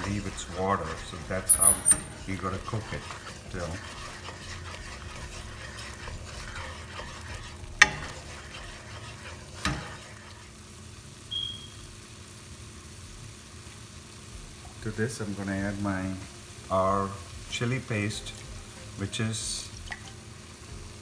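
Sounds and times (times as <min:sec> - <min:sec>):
utensil knocking against pan: 0:00.0 - 0:10.0
masala sizzling in oil: 0:00.0 - 0:21.0.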